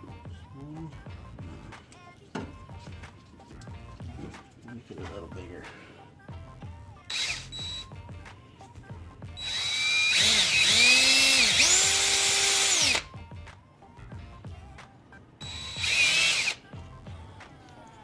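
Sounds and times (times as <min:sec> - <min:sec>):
power drill motor whine: 0:07.1 - 0:07.9, 0:09.4 - 0:13.0, 0:15.4 - 0:16.6.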